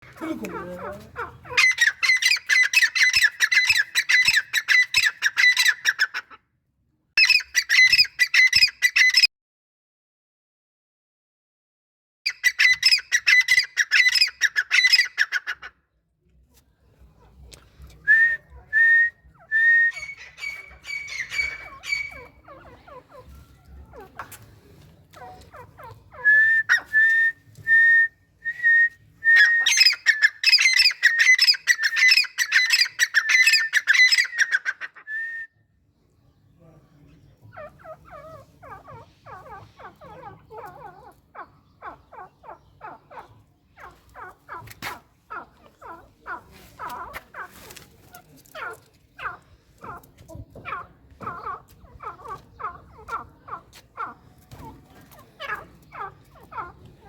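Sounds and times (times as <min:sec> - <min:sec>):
francolins calling: 0:00.0 - 0:06.2, 0:19.9 - 0:23.5, 0:29.4 - 0:35.0, 0:37.5 - 0:47.7, 0:48.6 - 0:57.0.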